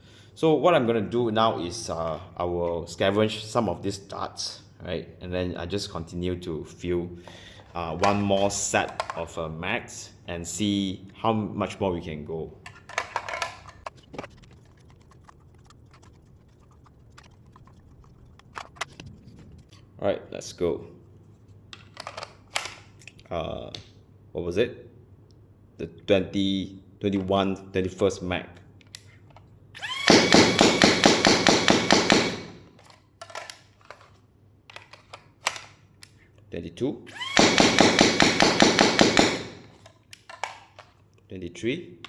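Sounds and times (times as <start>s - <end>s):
dart blaster motors whining: 29.8s - 32.8s, 37.1s - 39.8s
foam dart blaster firing: 30.0s - 32.6s, 37.4s - 39.7s
plastic clicks of darts loading: 32.8s - 36.4s, 39.8s - 41.2s.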